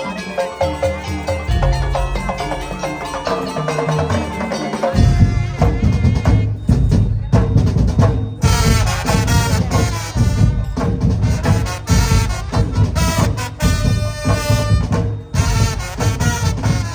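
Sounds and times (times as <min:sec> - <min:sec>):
melodic instruments: 0:00.0 - 0:12.4
drums and percussion: 0:00.0 - 0:16.9.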